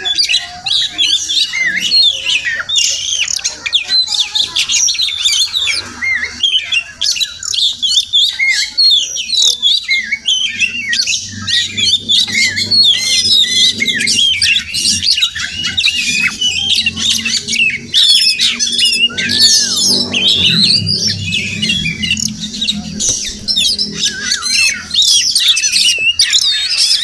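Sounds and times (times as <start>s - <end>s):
bird singing: 0.0s - 27.0s
faint low hum: 9.8s - 26.4s.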